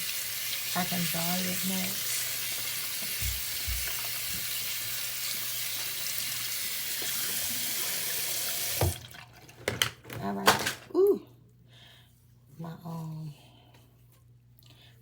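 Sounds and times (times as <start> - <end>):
tap water running into sink: 0.0 - 9.9.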